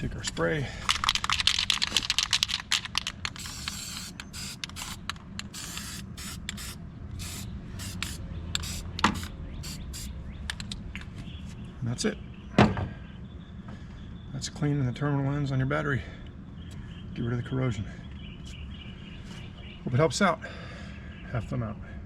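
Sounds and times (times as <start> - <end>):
spray can hissing: 3.2 - 10.1.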